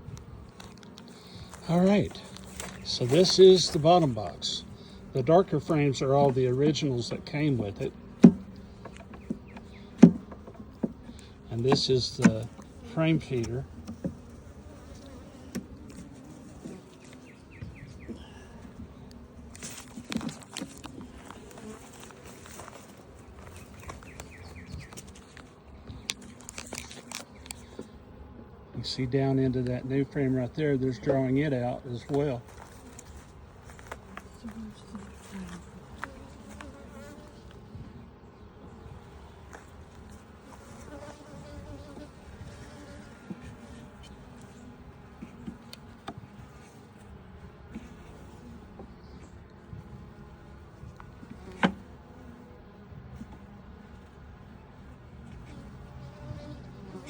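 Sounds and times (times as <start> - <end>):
honeybees buzzing: 0.0 - 57.0.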